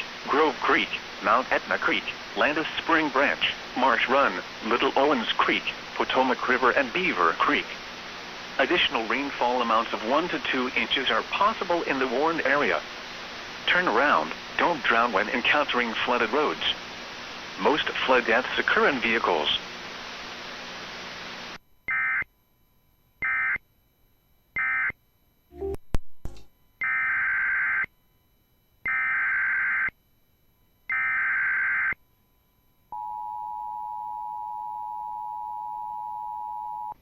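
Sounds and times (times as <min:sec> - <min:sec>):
radio hiss: 0:00.0 - 0:21.6
two-tone alert signal: 0:25.5 - 0:26.5
clicks: 0:25.6 - 0:26.5.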